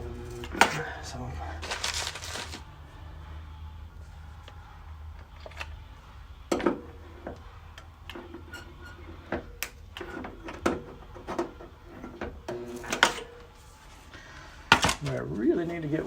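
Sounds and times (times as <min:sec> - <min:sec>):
low steady hum: 0:00.0 - 0:12.6.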